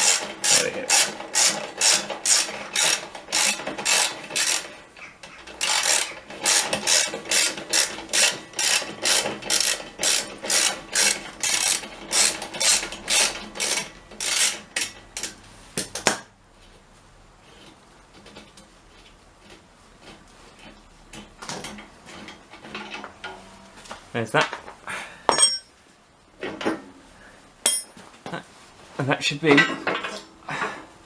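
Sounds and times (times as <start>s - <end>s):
ratchet wrench clicking: 5.6s - 14.9s.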